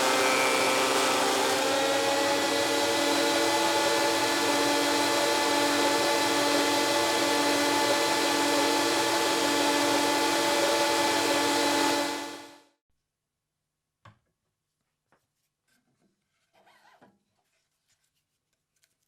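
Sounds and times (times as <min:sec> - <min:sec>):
electric wood planer whining: 0:00.0 - 0:12.6.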